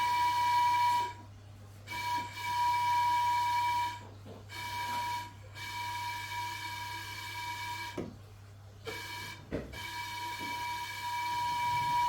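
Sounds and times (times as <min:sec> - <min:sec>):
steam whistle blasts: 0:01.9 - 0:04.0, 0:08.9 - 0:12.0.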